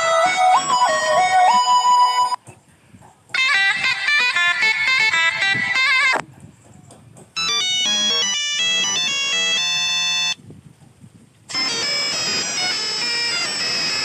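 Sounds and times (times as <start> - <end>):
musical phrase with bent notes: 0.0 - 2.4, 3.4 - 6.2, 7.4 - 10.4, 11.5 - 14.0
phone ringtone electronic notes: 0.0 - 2.4, 3.4 - 6.2, 7.4 - 10.4, 11.5 - 14.0.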